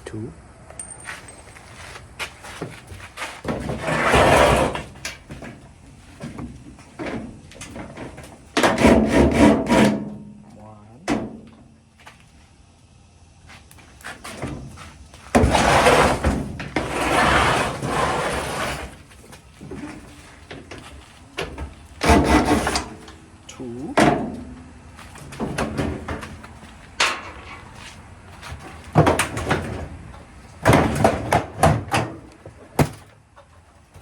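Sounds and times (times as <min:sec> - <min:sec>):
sheet metal scraping and rubbing: 0:03.4 - 0:05.0, 0:08.6 - 0:10.0, 0:15.4 - 0:19.1, 0:22.0 - 0:23.2.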